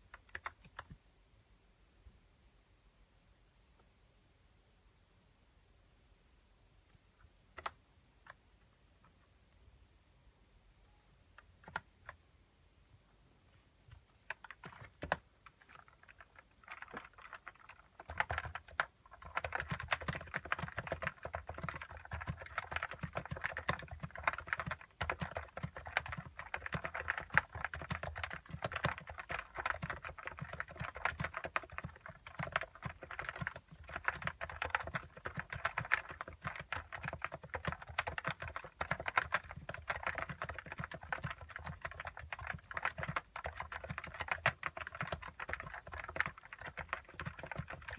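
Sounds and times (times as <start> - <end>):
keyboard typing: 0.0 - 1.0, 7.5 - 8.4, 11.4 - 12.2, 13.8 - 47.9.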